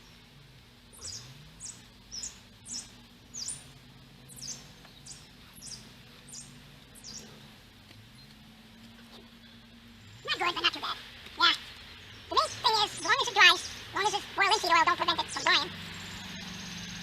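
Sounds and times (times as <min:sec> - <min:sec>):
small bird chirping: 0:00.0 - 0:08.4, 0:11.4 - 0:17.0
faint low hum: 0:00.0 - 0:17.0.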